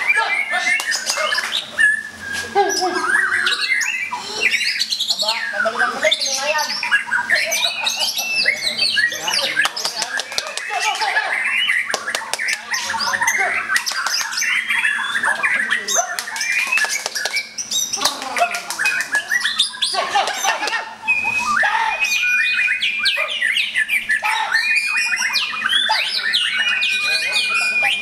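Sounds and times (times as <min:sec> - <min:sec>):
birds singing whistles and chatters: 0:00.0 - 0:28.0
long held bird whistle: 0:21.1 - 0:28.0.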